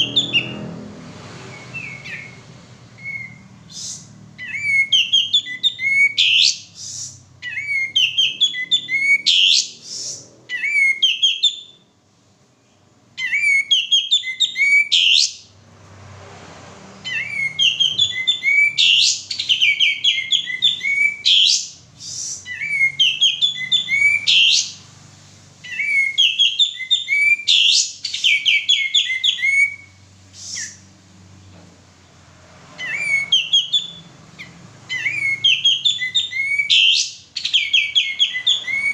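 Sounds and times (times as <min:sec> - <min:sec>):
bulbul singing high chirps: 0:01.5 - 0:11.9, 0:17.0 - 0:24.9, 0:25.6 - 0:30.9, 0:32.8 - 0:38.9.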